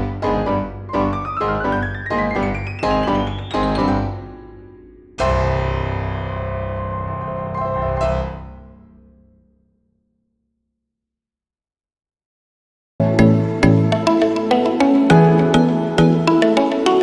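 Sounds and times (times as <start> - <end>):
piano music: 0.0 - 9.4, 13.0 - 17.0.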